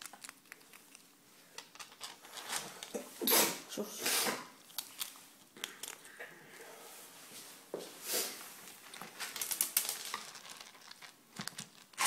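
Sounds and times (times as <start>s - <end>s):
pet chewing and crunching: 0.0s - 3.0s.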